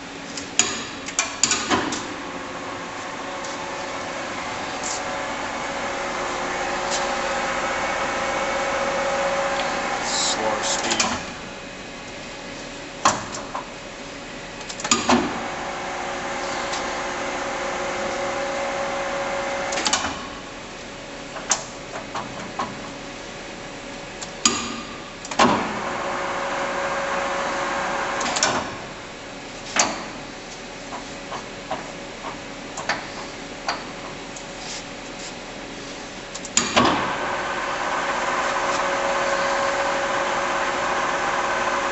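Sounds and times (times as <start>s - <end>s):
lathe spindle humming: 2.4s - 11.0s, 37.0s - 41.9s.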